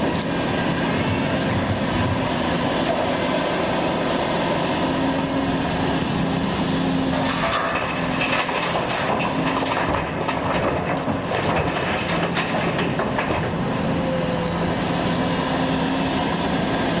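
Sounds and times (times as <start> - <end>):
excavator diesel engine running: 0.0 - 17.0
clattering knocks and scrapes: 7.1 - 14.0.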